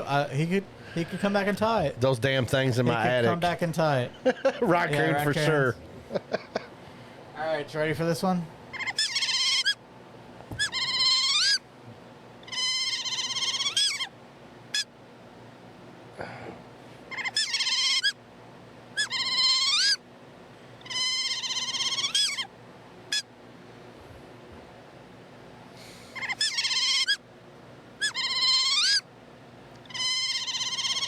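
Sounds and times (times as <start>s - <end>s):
otter squeals: 8.8s - 9.8s, 10.6s - 11.6s, 12.5s - 14.1s, 19.0s - 20.0s, 20.9s - 22.5s, 26.2s - 27.2s, 28.0s - 29.0s, 29.9s - 31.0s.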